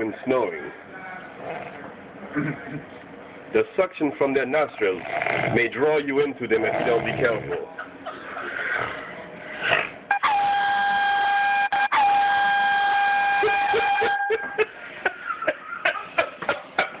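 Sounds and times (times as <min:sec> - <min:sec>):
air horn blasts: 0:10.1 - 0:14.6.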